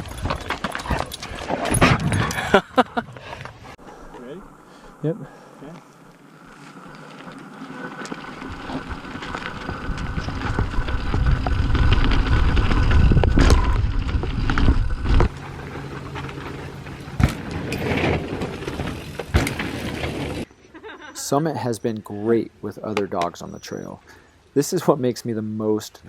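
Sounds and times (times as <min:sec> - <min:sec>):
tyres rolling over dirt and rock: 0:00.0 - 0:03.6, 0:06.2 - 0:20.5
bike knocking on bumps: 0:08.1 - 0:20.4
wind buffeting microphone: 0:08.3 - 0:15.7.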